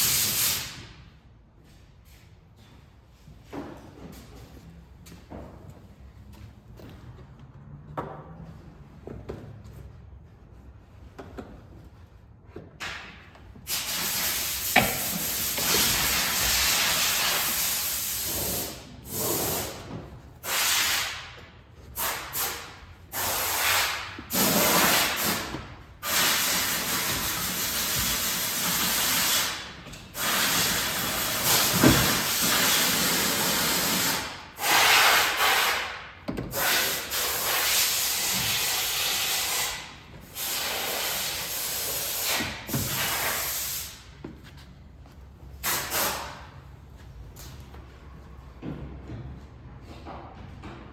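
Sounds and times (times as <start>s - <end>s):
loud hissing bursts: 20.4s - 21.3s, 22.0s - 29.6s, 30.2s - 36.0s, 36.6s - 44.0s.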